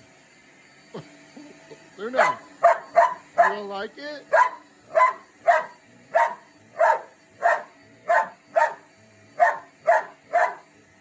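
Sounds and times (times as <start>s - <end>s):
dog barking: 2.2s - 3.7s, 4.3s - 10.7s.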